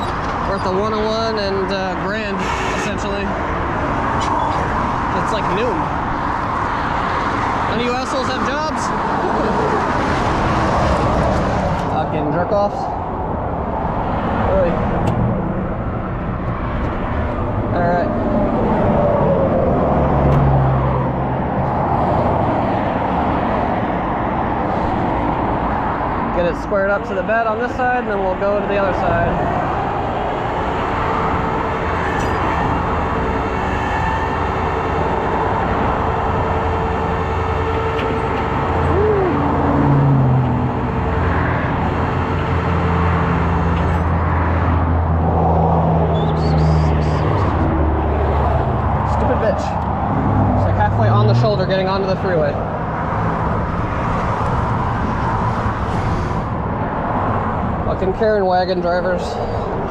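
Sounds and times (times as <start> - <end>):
freeway traffic roaring: 0.0 - 59.9
vehicle passing by: 1.1 - 34.4, 38.2 - 59.9
truck engine humming: 14.8 - 59.9.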